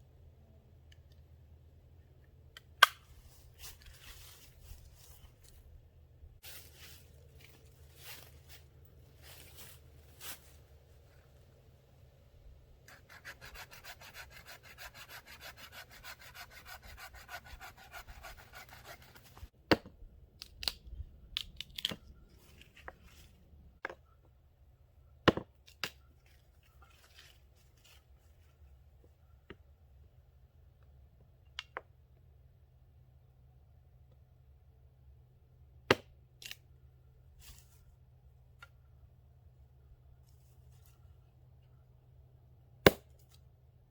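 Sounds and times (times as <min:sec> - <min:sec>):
hand saw cutting wood: 0:12.9 - 0:19.5.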